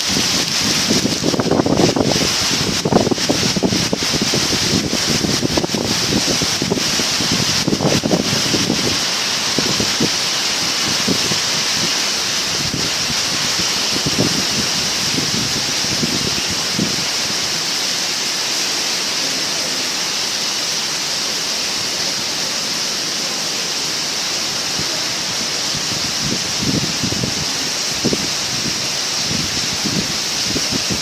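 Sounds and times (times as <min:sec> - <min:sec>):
wind buffeting microphone: 0:00.0 - 0:17.8, 0:24.7 - 0:31.0
heavy rain pouring: 0:00.0 - 0:31.0.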